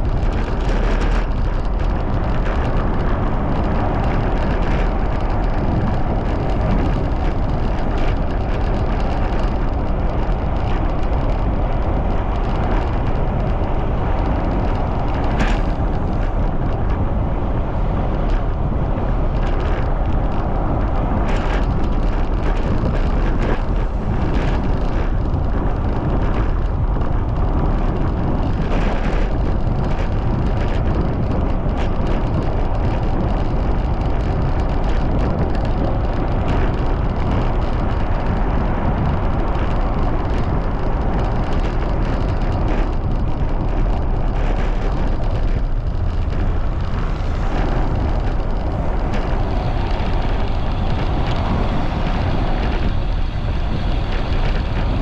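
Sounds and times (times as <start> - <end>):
wind rushing over microphone: 0.0 - 55.0.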